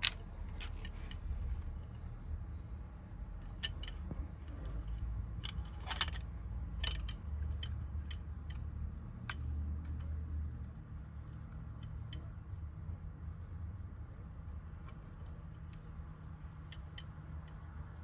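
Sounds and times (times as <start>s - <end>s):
small metal parts clicking: 0.0s - 2.0s, 3.4s - 10.1s
steady low hum: 0.0s - 18.0s.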